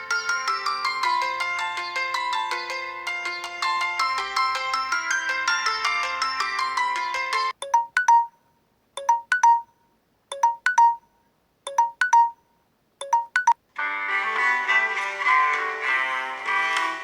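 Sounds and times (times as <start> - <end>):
busy ringtone tune: 0.0 - 8.4, 9.0 - 11.1, 11.7 - 12.4, 13.0 - 13.6
three-note ringtone chime: 0.0 - 8.4, 9.0 - 9.7, 10.3 - 11.0, 11.7 - 12.4, 13.0 - 13.6.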